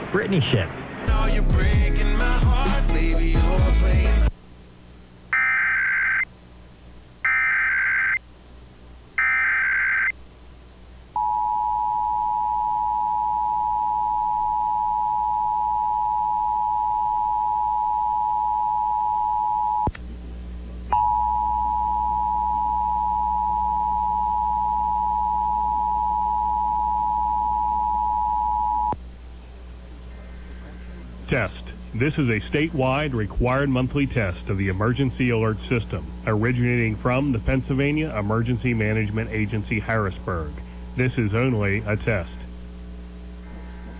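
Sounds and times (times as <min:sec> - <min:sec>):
click: 0:19.8 - 0:20.1.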